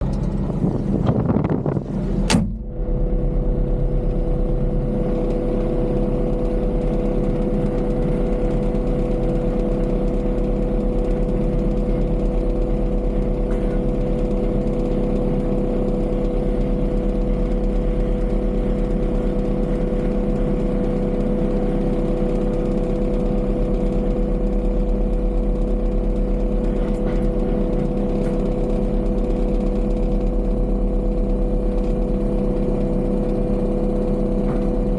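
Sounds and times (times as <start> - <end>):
heavy machine engine rumbling: 0.0 - 34.9
sharp click: 2.2 - 2.7.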